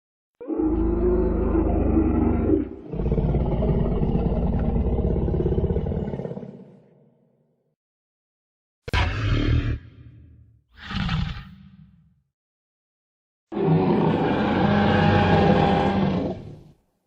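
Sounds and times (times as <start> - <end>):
deep rumbling dinosaur roars: 0.4 - 6.9, 8.9 - 10.1, 10.8 - 12.0, 13.5 - 16.7.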